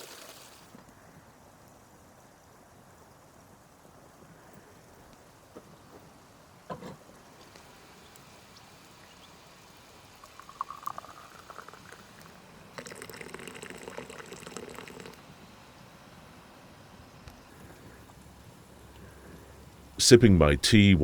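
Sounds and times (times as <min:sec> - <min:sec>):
tea pouring into a cup: 0:00.0 - 0:00.6, 0:10.1 - 0:15.3.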